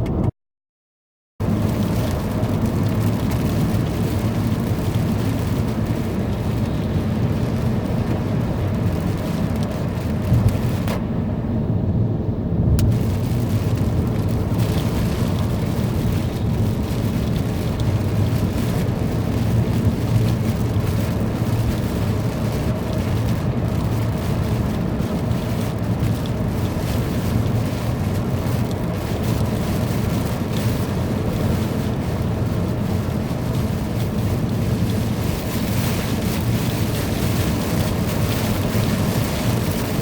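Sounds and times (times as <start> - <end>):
heavy rain downpour: 1.4 - 11.0, 12.8 - 40.0
wind: 1.4 - 40.0
low thunder rumble: 11.7 - 21.8.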